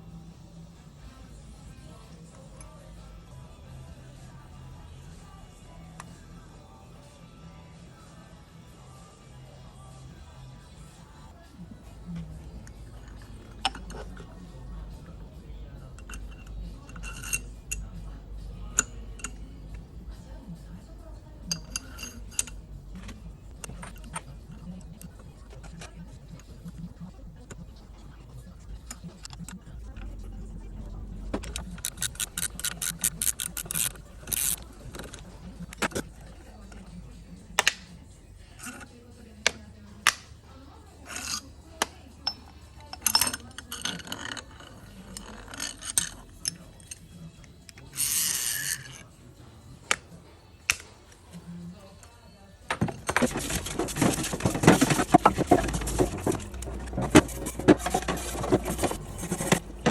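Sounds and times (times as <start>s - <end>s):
small metal parts clinking: 15.8s - 18.0s, 21.5s - 24.3s, 31.3s - 36.0s, 42.2s - 47.1s, 47.7s - 49.0s.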